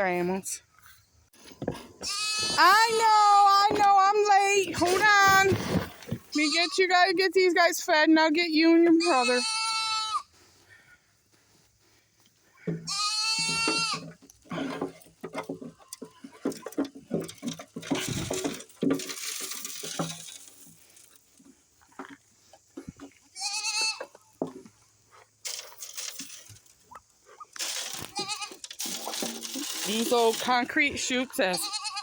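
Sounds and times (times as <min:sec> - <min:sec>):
goats bleating: 0:02.0 - 0:02.9, 0:06.3 - 0:06.9, 0:08.9 - 0:10.3, 0:12.6 - 0:14.1, 0:23.4 - 0:24.2, 0:27.9 - 0:28.6, 0:31.4 - 0:32.0
knocks and rustling: 0:12.6 - 0:23.2, 0:23.9 - 0:31.3.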